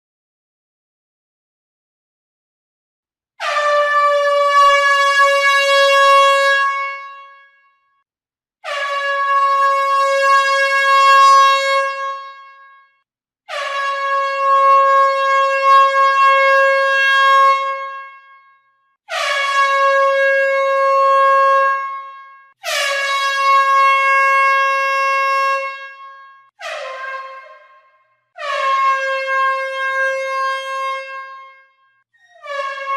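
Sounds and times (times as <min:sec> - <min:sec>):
horn blasts: 0:08.6 - 0:32.9.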